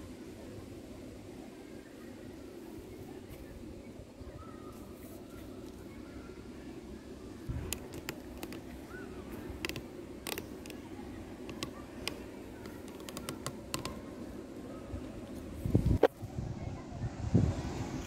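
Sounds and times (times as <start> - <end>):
quiet outdoor background noise: 0.0 - 18.0.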